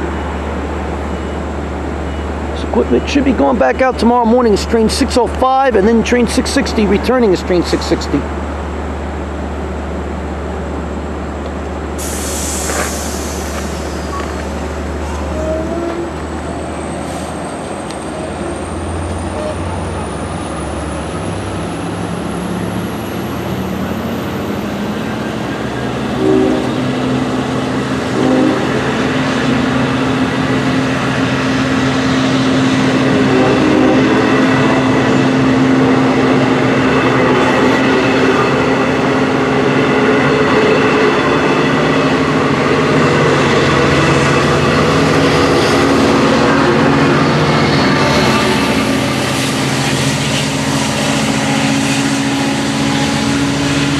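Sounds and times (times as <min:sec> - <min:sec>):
diesel train passing: 0:00.0 - 0:53.9
train horn blasts: 0:15.2 - 0:16.4, 0:26.0 - 0:27.3, 0:27.9 - 0:29.4, 0:33.1 - 0:34.6, 0:43.5 - 0:53.9.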